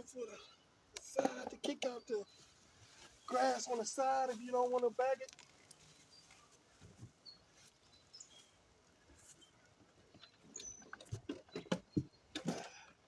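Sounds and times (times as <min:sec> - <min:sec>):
sharp knocks and rustles: 0:10.1 - 0:12.7.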